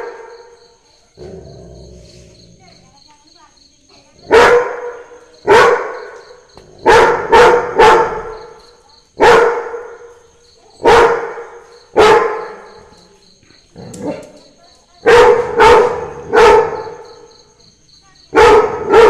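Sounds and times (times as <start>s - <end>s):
dog barking loudly: 4.3s - 6.1s, 6.8s - 8.4s, 9.2s - 10.1s, 10.8s - 12.6s, 15.0s - 17.0s, 18.3s - 19.0s.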